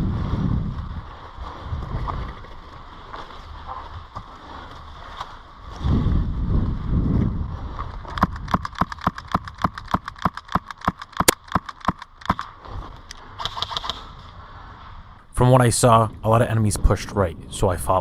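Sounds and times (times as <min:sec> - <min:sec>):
wind rumble on microphone: 0:00.0 - 0:11.0, 0:12.5 - 0:18.0
sharp clicks: 0:08.1 - 0:14.1.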